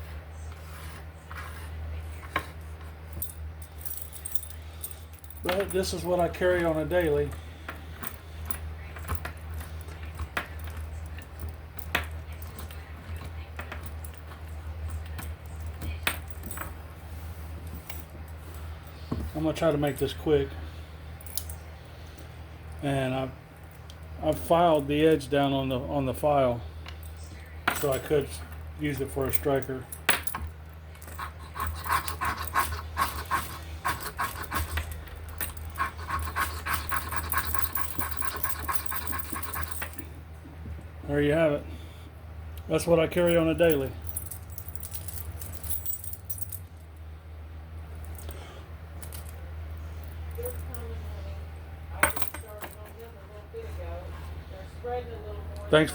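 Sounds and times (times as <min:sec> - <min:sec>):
steady low hum: 0:00.0 - 0:55.9
keys jangling and clinking: 0:03.1 - 0:16.8, 0:21.2 - 0:21.6, 0:27.0 - 0:40.1, 0:43.2 - 0:47.0, 0:49.0 - 0:49.4, 0:50.0 - 0:51.0, 0:52.0 - 0:53.1.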